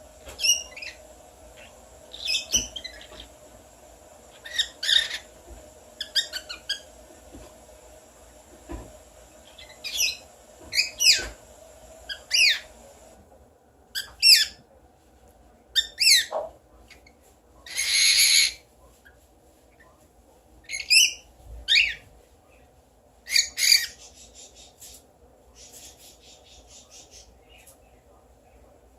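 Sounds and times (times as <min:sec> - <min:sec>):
bird chattering: 0:02.1 - 0:03.4, 0:04.4 - 0:05.3, 0:06.0 - 0:07.0.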